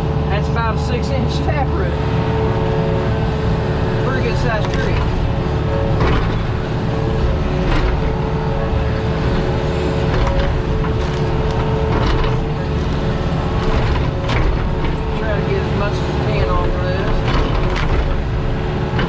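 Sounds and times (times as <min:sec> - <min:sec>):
diesel engine under load: 0:00.0 - 0:19.0
hydraulic whine: 0:00.0 - 0:19.0.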